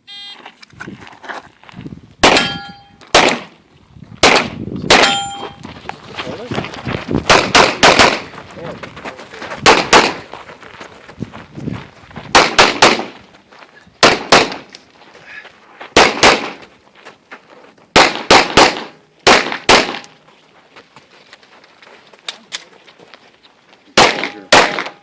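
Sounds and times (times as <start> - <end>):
pistol shots: 2.2 - 3.6, 4.2 - 5.5, 7.3 - 8.3, 9.6 - 10.2, 12.3 - 13.2, 14.0 - 14.7, 16.0 - 16.6, 17.9 - 20.2, 24.0 - 25.0.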